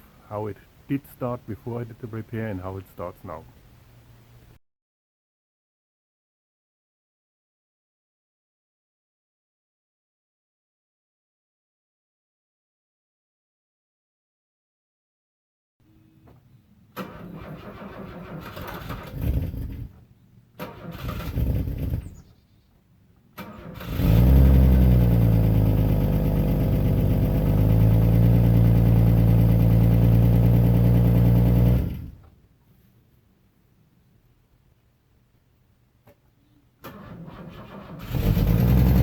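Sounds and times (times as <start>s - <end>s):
car starter cranking: 16.9s - 20.0s, 20.6s - 22.2s, 23.4s - 25.6s, 36.8s - 39.0s
car engine idling: 24.7s - 32.0s.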